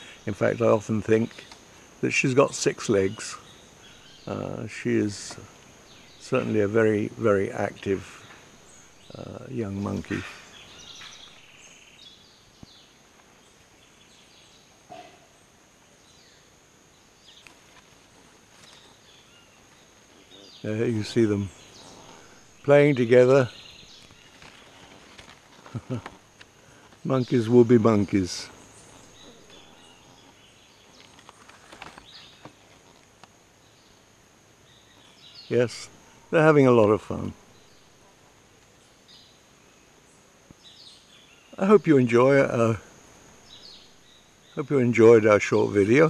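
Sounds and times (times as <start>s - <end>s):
insect drone: 0.0s - 46.0s
steady high-pitched whine: 0.0s - 46.0s
bird chirps: 2.8s - 15.4s, 18.5s - 32.6s
twigs and leaves snapping: 17.3s - 19.0s, 23.8s - 27.1s, 29.0s - 33.4s.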